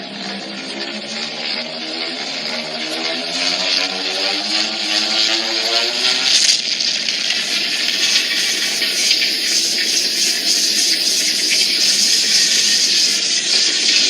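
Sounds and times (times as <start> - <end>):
steady rushing hiss: 6.3 - 13.2.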